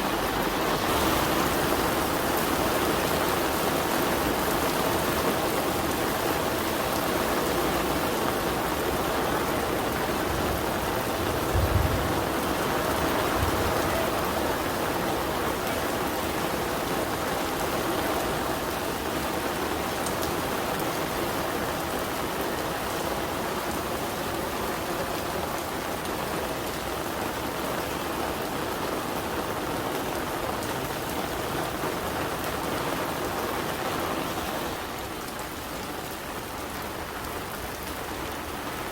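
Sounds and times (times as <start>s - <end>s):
steady rain falling: 0.0s - 38.9s
low thump: 11.5s - 12.2s.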